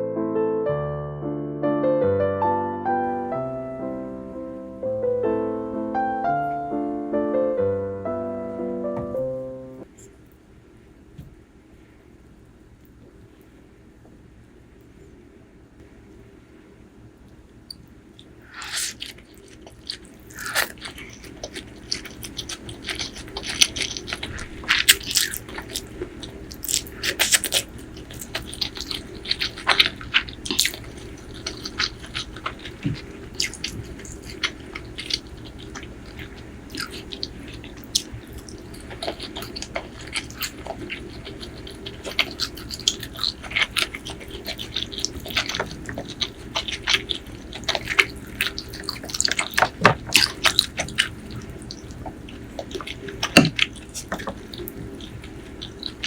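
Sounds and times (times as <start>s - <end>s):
person chewing crunchy food: 17.7s - 56.0s.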